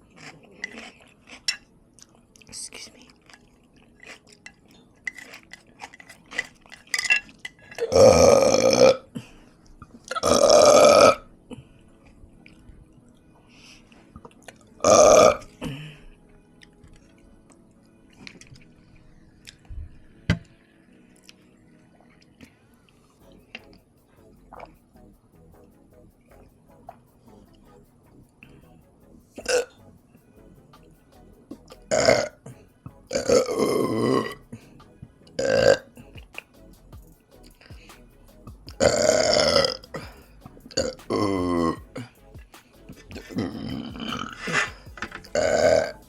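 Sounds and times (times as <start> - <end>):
person burping loudly: 7.6 - 9.3, 10.0 - 11.6, 14.8 - 16.0, 29.4 - 29.7, 31.9 - 34.6, 35.4 - 36.1, 38.8 - 42.2, 43.0 - 46.0.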